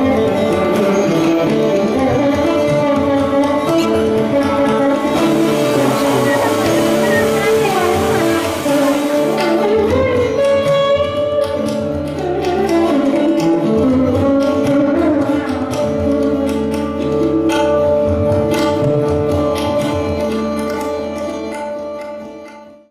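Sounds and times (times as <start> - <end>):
instrumental melody over drone: 0.0 - 22.1
drum strokes: 3.4 - 10.8.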